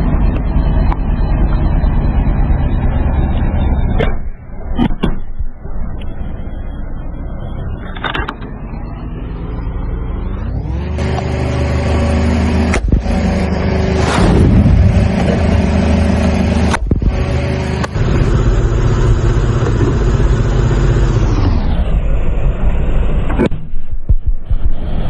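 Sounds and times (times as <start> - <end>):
car engine running: 9.8 - 21.8
short noisy burst: 13.8 - 17.3.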